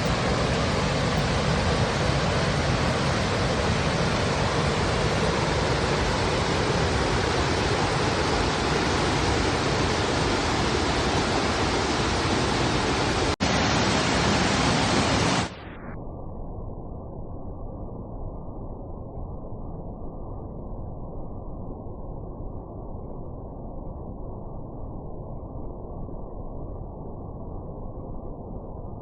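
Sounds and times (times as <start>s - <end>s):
river rushing over rocks: 0.0s - 15.5s.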